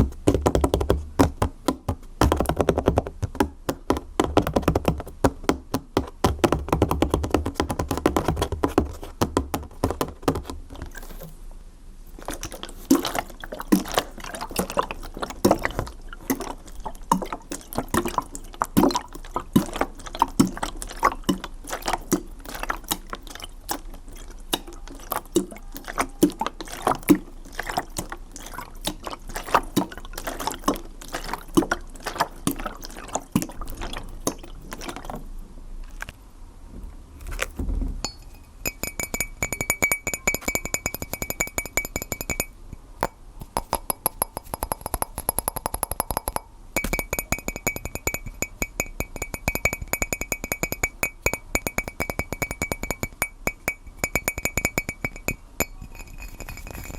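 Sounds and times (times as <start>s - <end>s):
water bubbling and dripping: 12.1s - 35.3s, 43.4s - 55.3s
low thump: 37.6s - 38.1s
high ringing tone: 46.8s - 48.4s.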